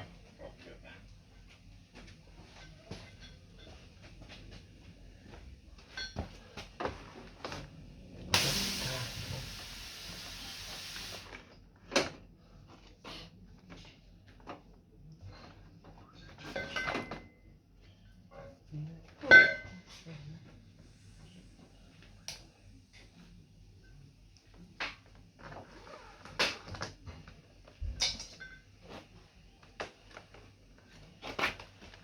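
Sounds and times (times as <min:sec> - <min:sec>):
pressurised gas hissing: 0:08.3 - 0:11.3.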